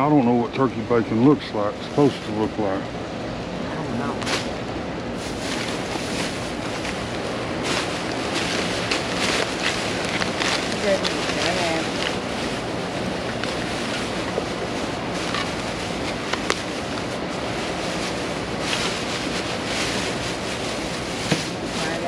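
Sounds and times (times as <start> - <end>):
heavy rain hiss: 0.6 - 2.9, 3.6 - 22.0.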